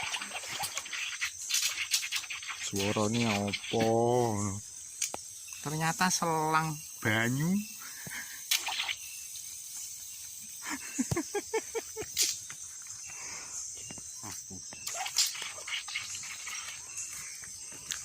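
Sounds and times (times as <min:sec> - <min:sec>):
water pipe squeaking and clicking: 0:00.0 - 0:04.0, 0:14.7 - 0:17.2.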